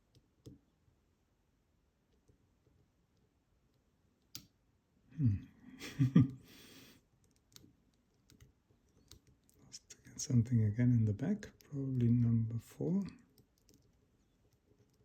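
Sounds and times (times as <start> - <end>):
person murmuring and breathing: 5.1 - 7.0.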